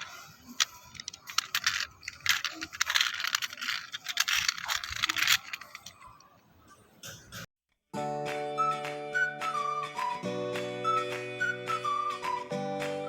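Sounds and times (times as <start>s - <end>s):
small hard objects clicking: 0.0s - 6.2s.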